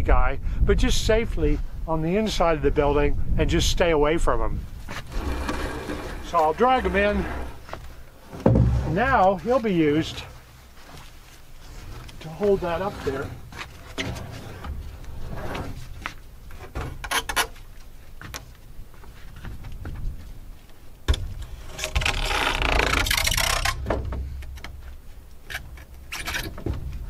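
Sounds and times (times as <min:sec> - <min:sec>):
wood scraping and rubbing: 0:04.8 - 0:17.3, 0:21.4 - 0:24.4
wooden knocks: 0:06.9 - 0:09.4.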